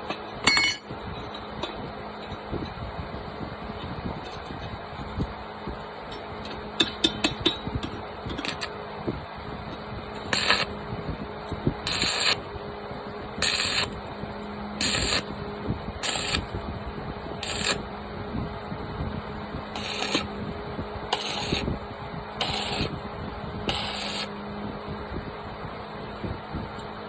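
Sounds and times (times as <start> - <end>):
steady low hum: 0.0 - 27.0
welding arc hissing crackle: 8.3 - 8.8, 10.2 - 10.8, 11.9 - 12.5, 13.4 - 14.0, 14.8 - 15.4, 16.0 - 16.6, 17.4 - 17.9, 19.7 - 20.3, 21.1 - 21.8, 22.4 - 23.0, 23.7 - 24.3.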